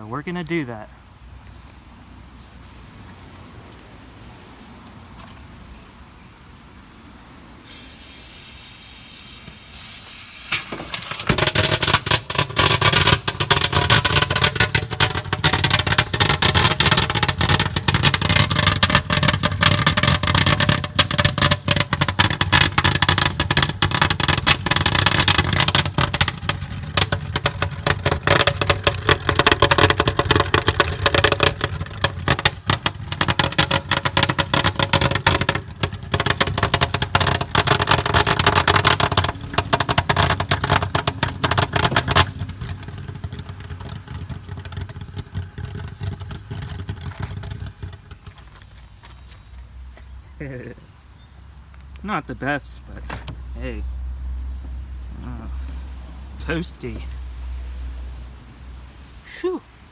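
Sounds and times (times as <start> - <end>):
fireworks hissing: 7.6 - 15.6
fireworks crackling rapidly: 7.6 - 48.6.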